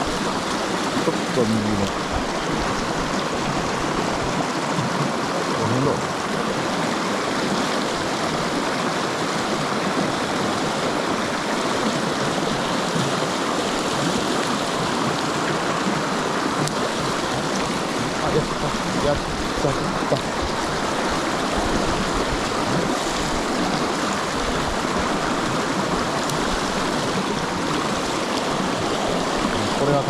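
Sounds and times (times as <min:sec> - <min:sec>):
stream water rushing: 0:00.0 - 0:30.0.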